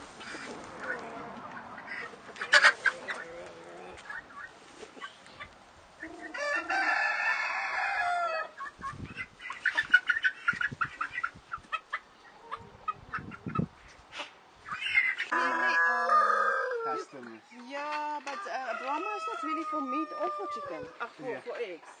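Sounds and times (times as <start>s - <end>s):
chickens clucking: 0.0s - 21.4s
rooster crowing: 6.3s - 8.6s, 15.3s - 17.0s, 18.5s - 20.9s.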